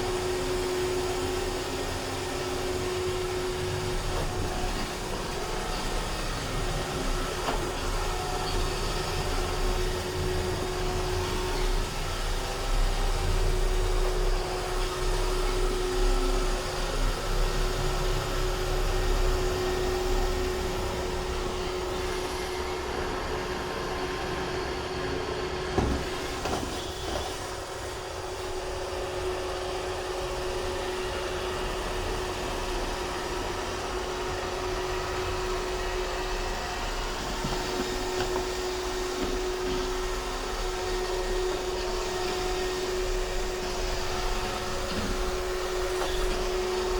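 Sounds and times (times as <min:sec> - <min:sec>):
robot vacuum running: 0:00.0 - 0:46.9
knock: 0:25.8 - 0:26.7.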